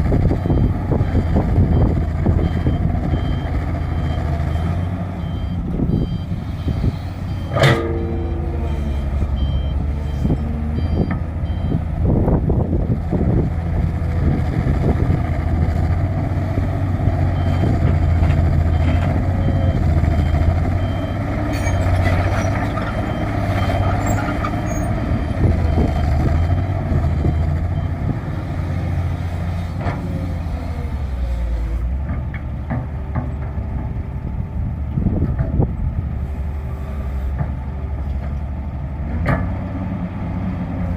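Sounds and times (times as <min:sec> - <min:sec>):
diesel engines running: 0:00.0 - 0:40.9
reversing alarm beeps: 0:00.4 - 0:11.8, 0:17.3 - 0:22.4, 0:23.0 - 0:24.9
metal clanks: 0:07.5 - 0:09.0.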